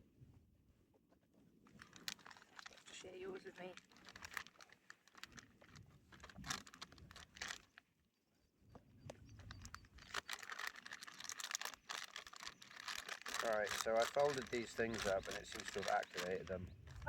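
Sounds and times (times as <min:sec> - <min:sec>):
plastic pouches crinkling: 0:01.7 - 0:07.8, 0:09.4 - 0:17.0.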